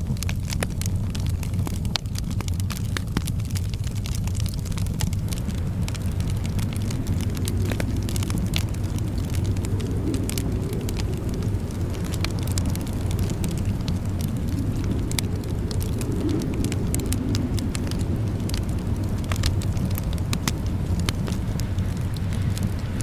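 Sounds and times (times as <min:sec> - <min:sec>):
fire crackling and popping: 0:00.0 - 0:23.0.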